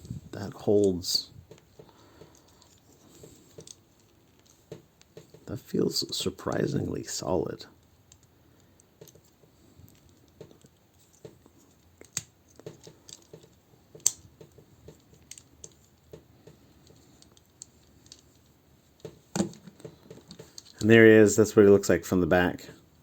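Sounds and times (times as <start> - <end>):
plastic toy parts clicking: 1.5 - 5.4, 7.8 - 16.2, 16.8 - 20.9.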